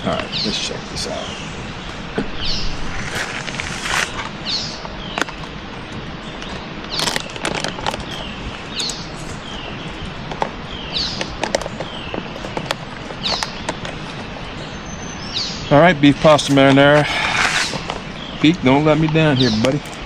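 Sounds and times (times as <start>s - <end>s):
steady hiss: 0.0s - 4.9s, 15.7s - 19.4s
sharp clicks and crinkles: 2.9s - 4.3s, 6.9s - 9.0s, 19.6s - 20.0s
songbird calling: 8.0s - 18.6s.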